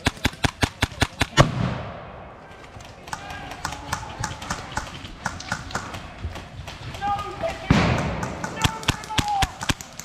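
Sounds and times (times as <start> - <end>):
airsoft gunfire: 0.0 - 10.0
sharp clicks: 2.6 - 10.0.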